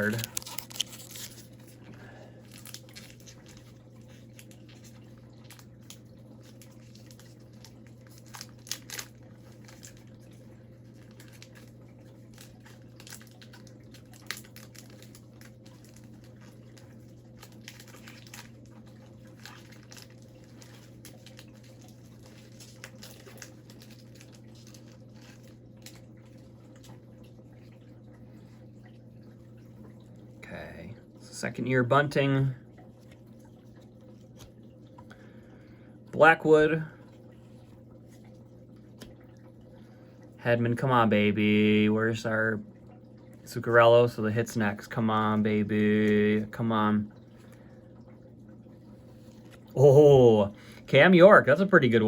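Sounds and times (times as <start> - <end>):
card wrappers crinkling: 0.0 - 1.8, 2.4 - 10.1, 10.8 - 26.1
steady low hum: 0.0 - 52.0.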